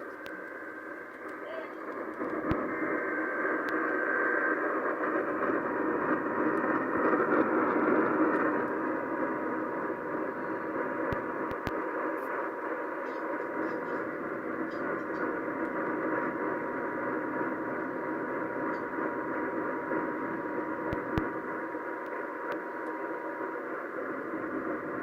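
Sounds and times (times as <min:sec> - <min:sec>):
sharp radio clicks: 0:00.0 - 0:09.0, 0:10.6 - 0:16.2, 0:19.9 - 0:24.6
faint steady tone: 0:00.0 - 0:25.0
radio static hiss: 0:00.0 - 0:25.0.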